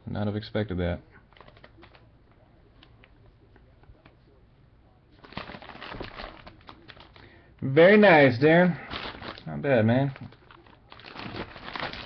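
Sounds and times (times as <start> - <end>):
faint clicks and plastic rustling: 1.1 - 4.4, 5.2 - 7.4, 8.9 - 12.0.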